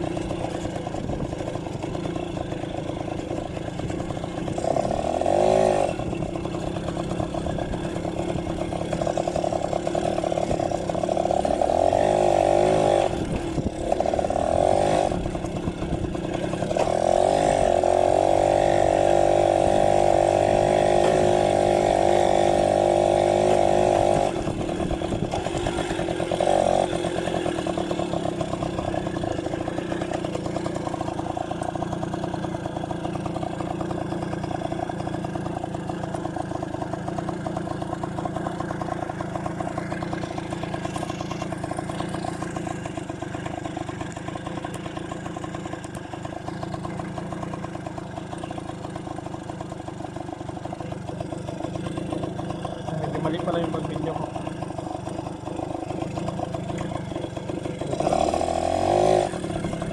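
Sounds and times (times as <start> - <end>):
two-stroke motorcycle engine: 0.0 - 59.9.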